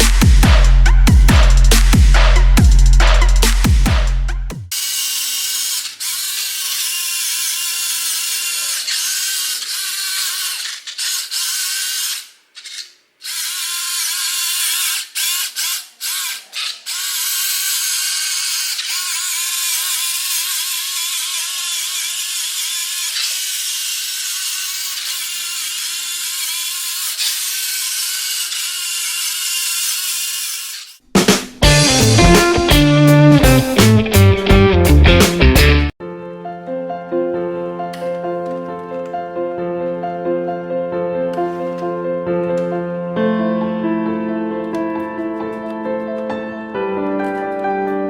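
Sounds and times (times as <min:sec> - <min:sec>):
power tool whining: 0:04.7 - 0:31.0.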